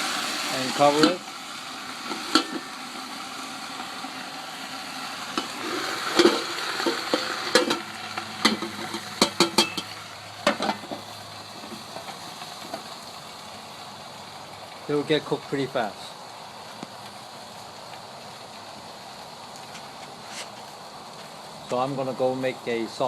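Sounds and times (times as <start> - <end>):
vegetables sizzling in a wok: 0.0 - 23.0
cookware clinking and knocking: 8.5 - 9.9.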